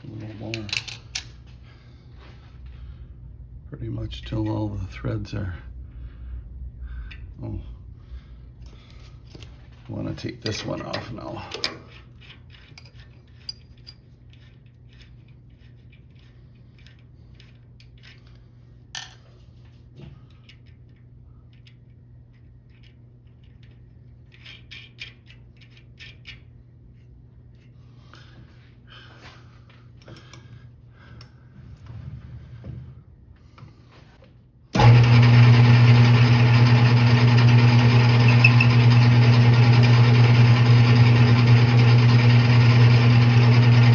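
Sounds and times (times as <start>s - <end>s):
steady low hum: 0.0s - 24.5s.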